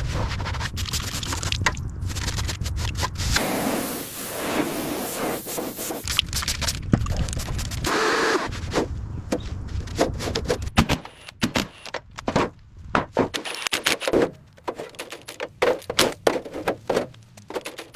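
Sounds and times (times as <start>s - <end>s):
sharp knocks and clicks: 10.8s - 17.9s.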